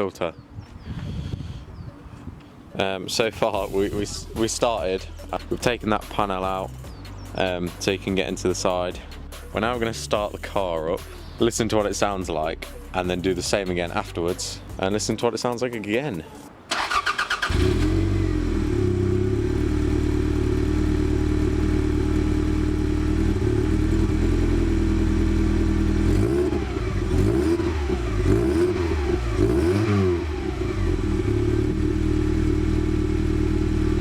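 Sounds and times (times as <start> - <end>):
car engine idling and revving: 16.8 - 34.0.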